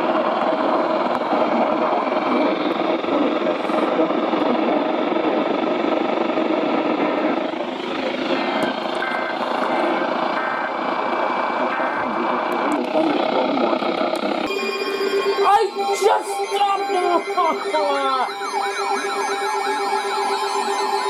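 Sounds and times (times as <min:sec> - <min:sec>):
two-tone digital data bursts: 0:14.5 - 0:21.0.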